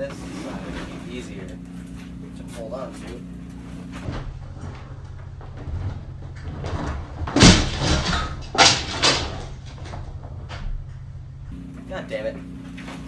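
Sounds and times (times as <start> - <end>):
steady low hum: 0.0 - 13.0
clattering crash: 4.0 - 11.5
heavy knocks: 4.0 - 11.6.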